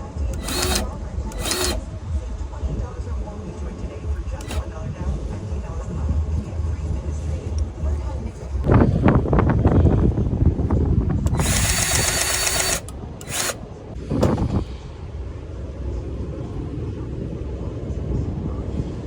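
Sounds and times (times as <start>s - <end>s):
power tool running: 0.0s - 1.8s, 4.4s - 4.7s, 11.3s - 13.6s
low rumble: 0.0s - 19.0s.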